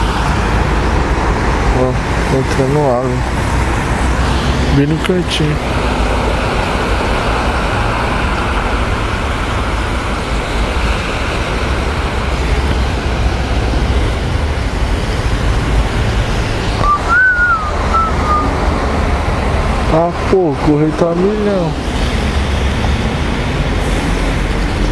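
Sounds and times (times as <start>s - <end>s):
wind and road noise: 0.0s - 24.9s
wavering high tone: 16.8s - 18.6s.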